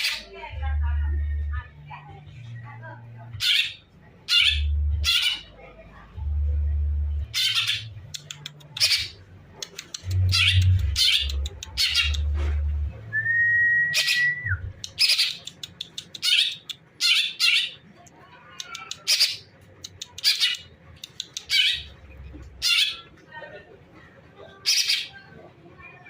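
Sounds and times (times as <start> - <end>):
bird chattering calls: 7.3 - 12.4, 14.0 - 17.8, 18.6 - 22.0
bird whistle: 13.5 - 14.6.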